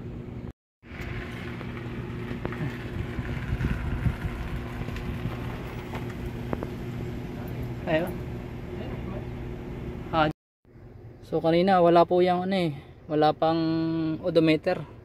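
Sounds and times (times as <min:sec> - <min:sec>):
mechanical hum: 0:00.0 - 0:11.6.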